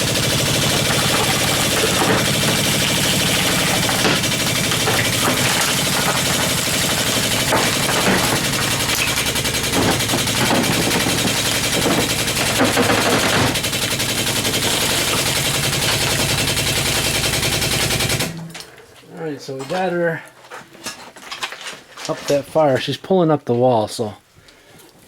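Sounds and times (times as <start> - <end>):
air-driven hydraulic pump rattling: 0.0 - 18.7.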